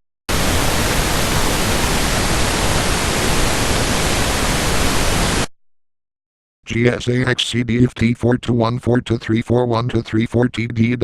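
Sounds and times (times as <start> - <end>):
loud static hiss: 0.3 - 5.5.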